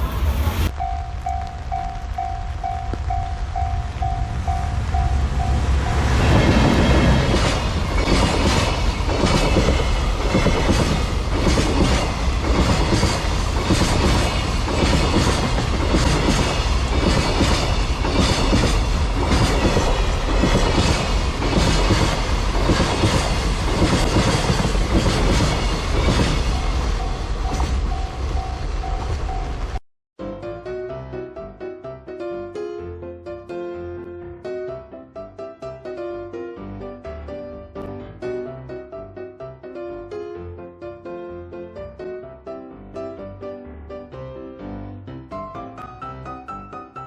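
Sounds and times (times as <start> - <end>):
crossing warning bell: 0.2 - 9.2, 25.5 - 29.8
train wheels clattering over joints: 6.3 - 26.8.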